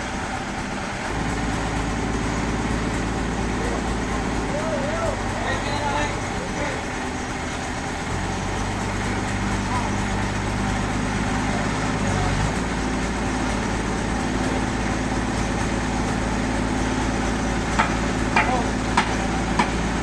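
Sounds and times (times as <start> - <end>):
sawmill machinery humming: 0.0 - 20.0
sharp knocks: 17.8 - 19.8.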